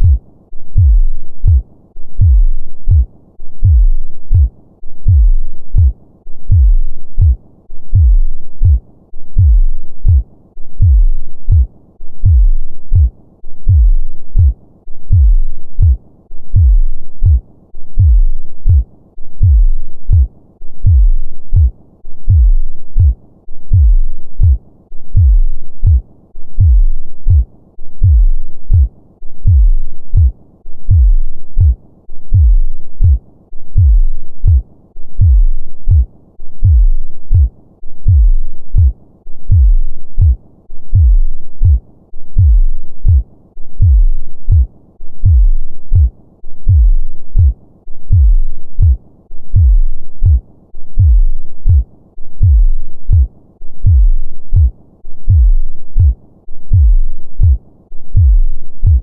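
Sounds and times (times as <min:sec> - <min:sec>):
heartbeat: 0:00.0 - 0:59.0.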